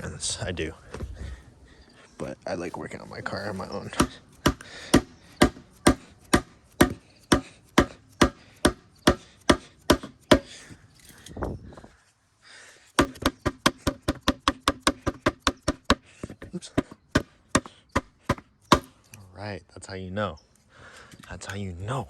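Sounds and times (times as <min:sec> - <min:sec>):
hammer striking metal: 0:04.0 - 0:10.5.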